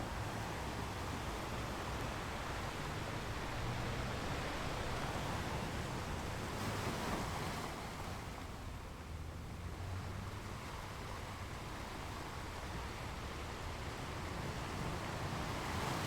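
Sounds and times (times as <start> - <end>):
ocean surf washing onto beach: 0.0 - 8.2.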